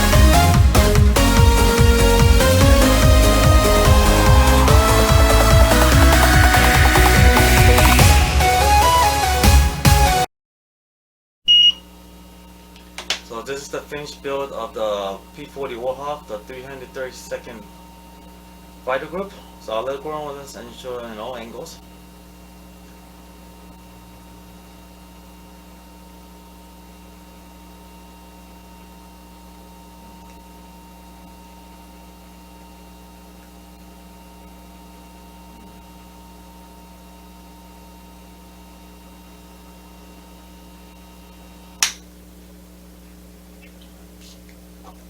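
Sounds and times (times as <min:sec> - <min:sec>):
electrical mains hum: 0:11.5 - 0:45.0
sharp click: 0:41.8 - 0:42.1.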